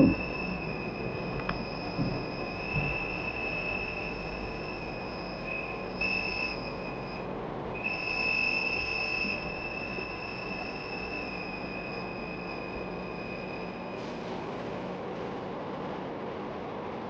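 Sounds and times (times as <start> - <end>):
buzzer high-pitched tone: 0.0 - 0.6, 1.6 - 7.2, 7.8 - 11.4.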